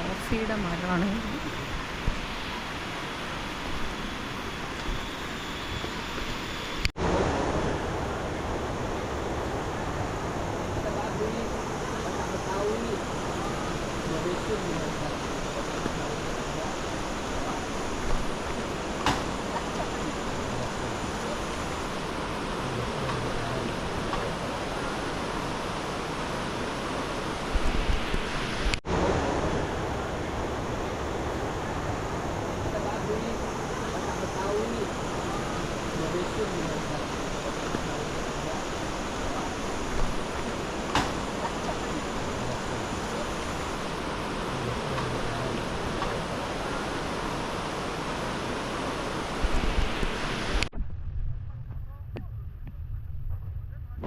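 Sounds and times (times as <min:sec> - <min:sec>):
waterfall roaring: 0:00.0 - 0:50.7
wind bumps on microphone: 0:49.4 - 0:54.0
low rumble: 0:50.6 - 0:54.0.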